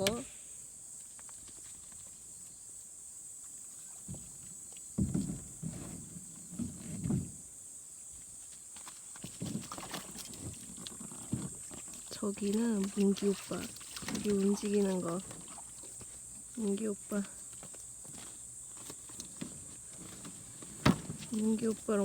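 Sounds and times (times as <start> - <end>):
water sloshing and splashing: 8.7 - 22.0.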